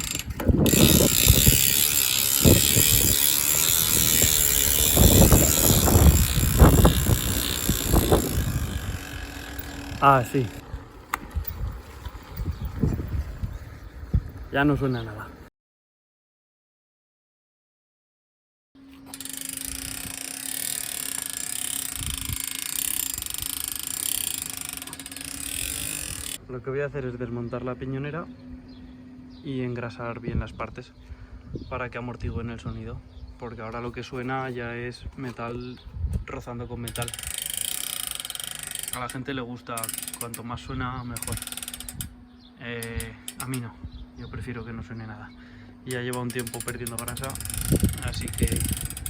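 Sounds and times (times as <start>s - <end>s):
bicycle freehub ratcheting buzz: 0.0s - 12.9s, 18.8s - 26.4s, 36.8s - 44.0s, 45.4s - 49.0s.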